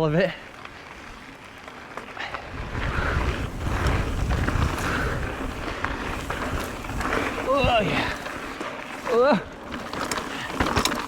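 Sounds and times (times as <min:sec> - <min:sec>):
tyres rolling over dirt: 0:00.0 - 0:11.0
wind buffeting microphone: 0:02.3 - 0:08.6.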